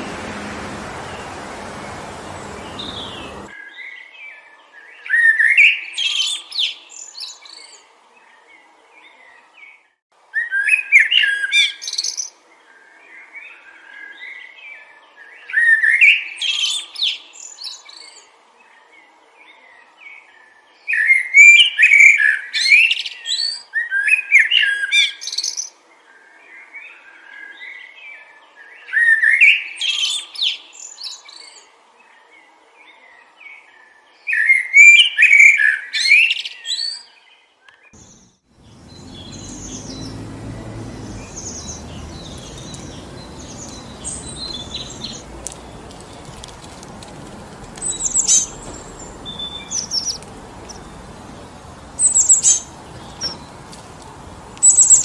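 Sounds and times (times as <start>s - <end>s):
steady wind rush: 0.0s - 3.5s
songbird chirping: 0.0s - 3.6s, 33.0s - 55.0s.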